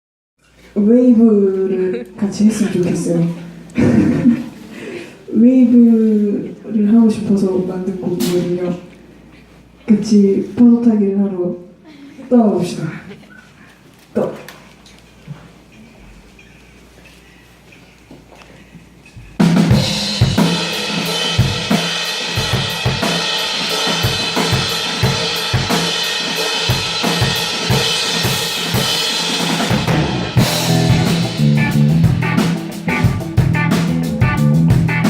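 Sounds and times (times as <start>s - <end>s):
live rock band: 19.4s - 35.0s.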